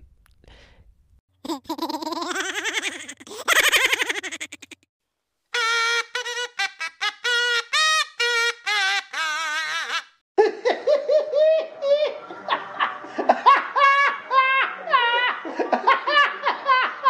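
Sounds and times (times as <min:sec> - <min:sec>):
high-pitched laughter: 0:01.4 - 0:04.9, 0:05.6 - 0:12.6.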